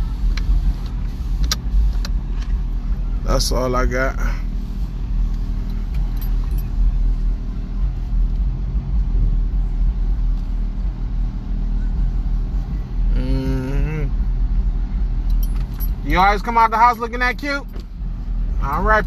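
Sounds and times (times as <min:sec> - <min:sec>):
car engine idling: 0:00.0 - 0:19.0
wavering voice-like sound: 0:13.1 - 0:14.1.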